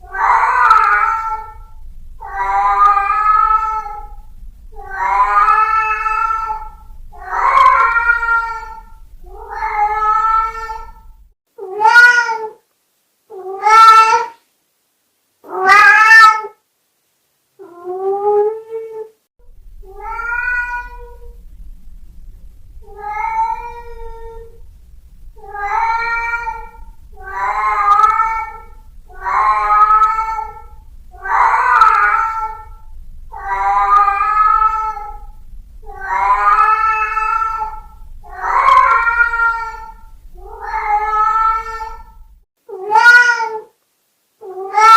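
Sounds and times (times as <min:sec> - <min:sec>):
cat meowing plaintively: 0:00.0 - 0:04.2, 0:04.8 - 0:12.6, 0:19.8 - 0:21.4, 0:22.8 - 0:24.6, 0:25.4 - 0:43.7, 0:44.4 - 0:44.9.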